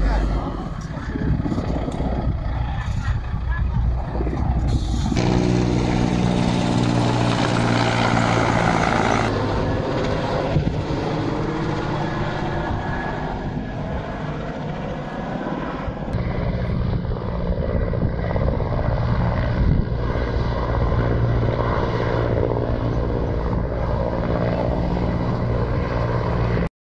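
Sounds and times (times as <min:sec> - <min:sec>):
motor humming: 0:05.2 - 0:09.3.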